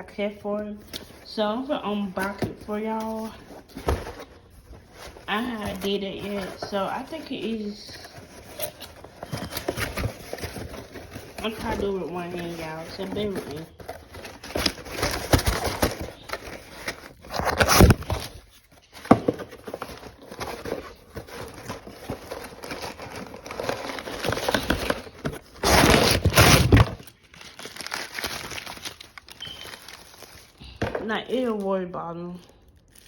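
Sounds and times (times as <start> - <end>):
packaging being torn and crinkled: 12.9 - 19.0, 19.6 - 30.6, 32.7 - 33.0.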